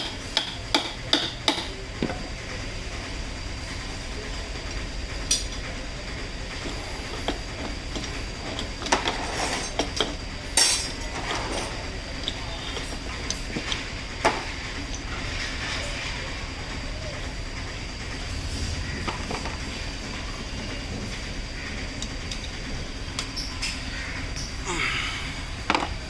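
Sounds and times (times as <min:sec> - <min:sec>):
steady low hum: 0:00.0 - 0:26.0
metal tools clinking on metal: 0:09.0 - 0:12.4.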